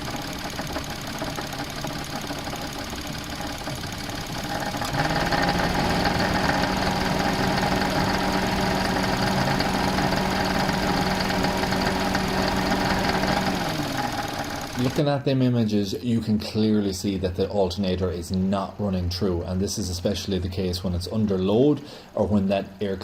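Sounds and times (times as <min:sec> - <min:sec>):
car engine running: 0:00.0 - 0:15.0
rattle from engine bay: 0:00.0 - 0:15.0.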